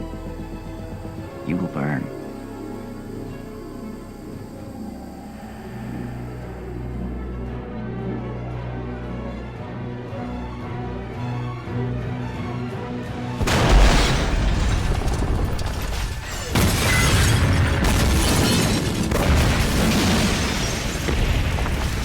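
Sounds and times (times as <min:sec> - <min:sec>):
dramatic orchestral score: 0:00.0 - 0:16.0
heavy fireball rumble: 0:19.1 - 0:22.0.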